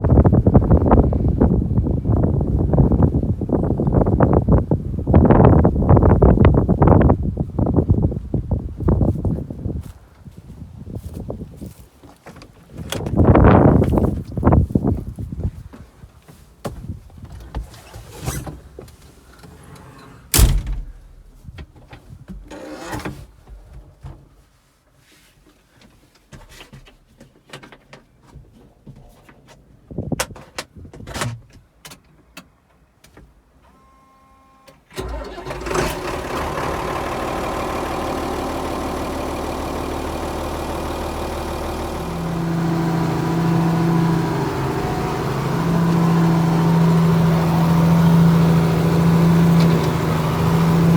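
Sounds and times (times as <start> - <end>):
tractor diesel engine running: 34.9 - 50.9.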